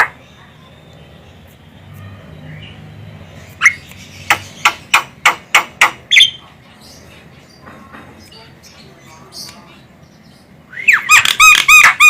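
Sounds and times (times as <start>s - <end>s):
myna bird calling: 2.2s - 12.0s.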